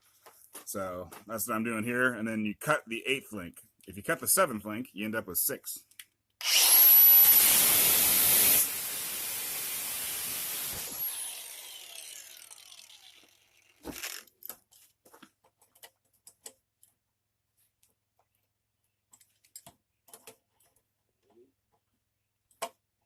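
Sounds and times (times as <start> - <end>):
power tool cutting steel chain: 6.4 - 14.5.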